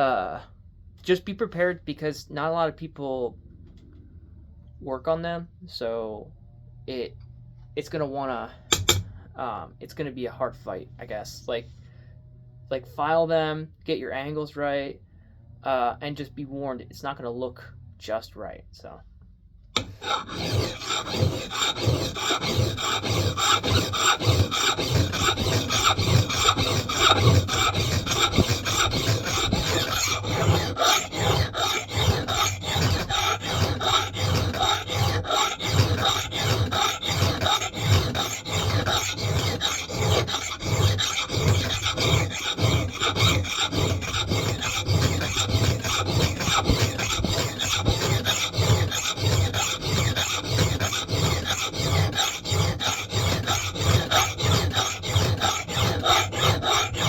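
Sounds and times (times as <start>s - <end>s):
hand file rasping on steel: 8.7s - 9.1s, 19.8s - 57.0s.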